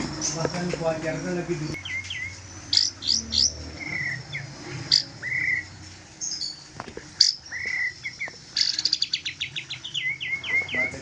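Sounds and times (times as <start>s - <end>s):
high bird chirps: 1.6s - 11.0s
songbird whistling: 1.7s - 6.6s, 7.2s - 11.0s.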